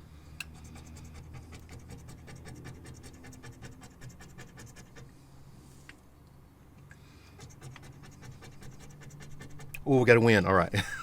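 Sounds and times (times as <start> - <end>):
scratching lottery ticket: 0.5 - 5.2, 7.3 - 10.3.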